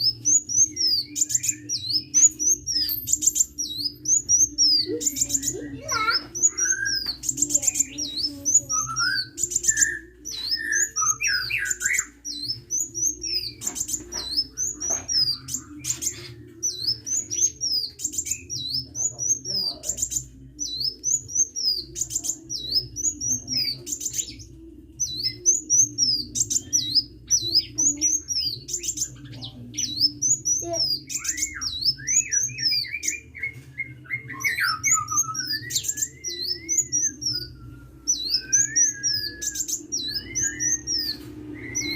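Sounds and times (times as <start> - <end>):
songbird chirping: 0.0 - 41.9.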